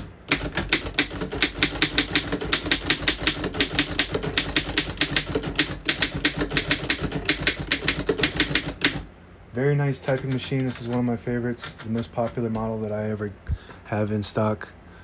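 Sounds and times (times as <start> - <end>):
typewriter typing: 0.0 - 9.1, 10.0 - 12.8.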